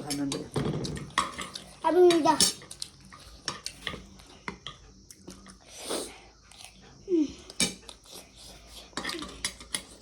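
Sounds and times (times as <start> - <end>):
chewing: 0.8 - 1.8, 2.4 - 5.7.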